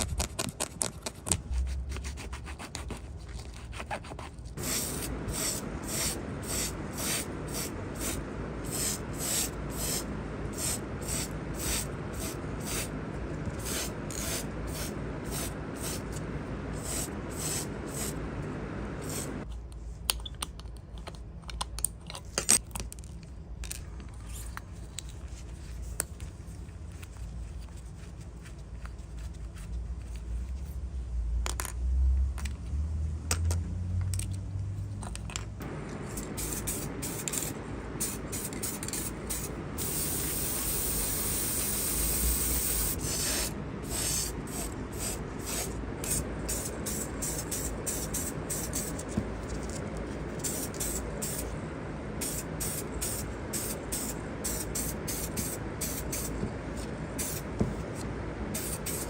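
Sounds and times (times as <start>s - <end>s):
spray hissing: 4.6s - 13.0s, 13.6s - 16.2s, 16.8s - 19.4s, 35.6s - 49.0s, 52.2s - 56.3s, 58.6s - 59.0s.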